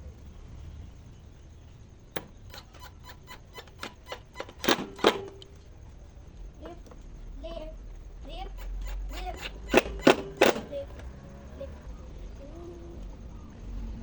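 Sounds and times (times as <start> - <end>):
loud knocks: 9.7 - 11.1.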